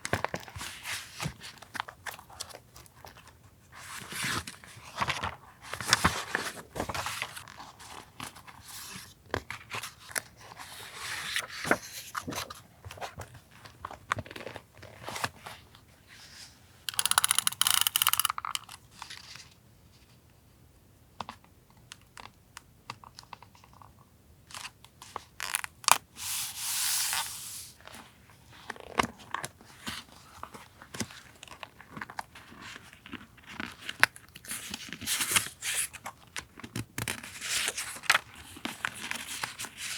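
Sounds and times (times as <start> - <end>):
paper rustling and crinkling: 0.0 - 16.4.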